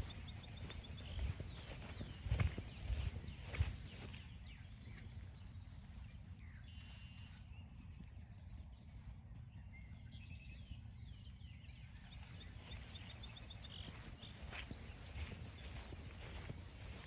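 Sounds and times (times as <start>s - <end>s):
songbirds chirping: 0.0s - 17.0s
footstep scuff: 12.4s - 17.0s.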